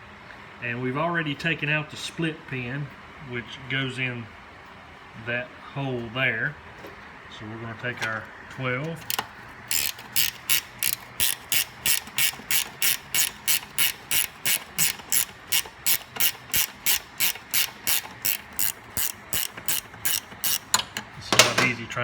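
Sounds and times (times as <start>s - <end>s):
ratchet wrench clicking: 9.0s - 21.6s.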